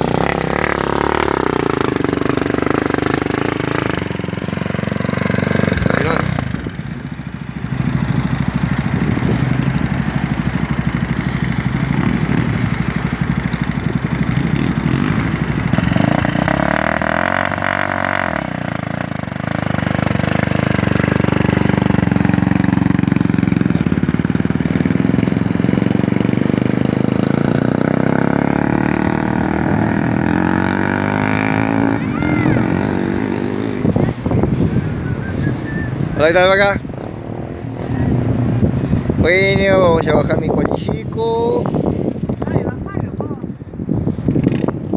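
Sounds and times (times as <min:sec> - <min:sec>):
quad engine running: 0:00.0 - 0:44.9.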